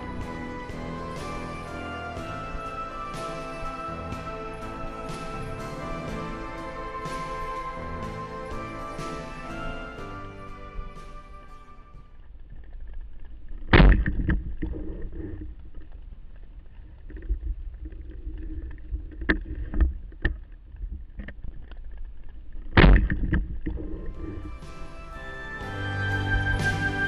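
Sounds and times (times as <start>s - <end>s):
low rumble of water: 11.8s - 24.9s.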